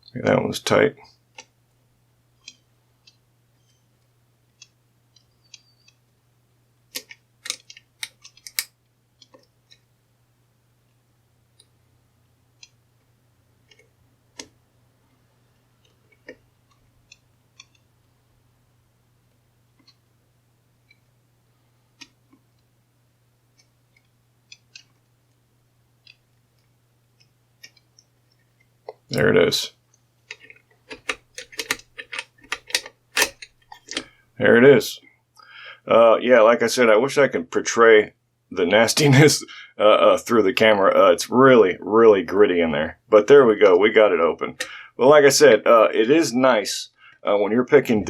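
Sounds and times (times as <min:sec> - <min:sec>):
metallic clicks and scrapes in lock: 0:07.0 - 0:08.7, 0:30.3 - 0:34.1.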